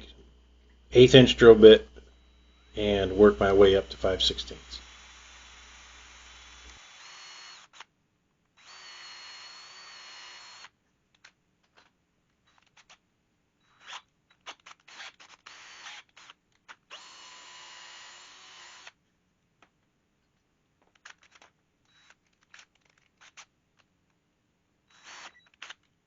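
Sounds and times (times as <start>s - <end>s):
power drill boring into wood: 1.4s - 7.9s, 8.6s - 10.8s, 13.6s - 19.0s, 24.9s - 25.9s.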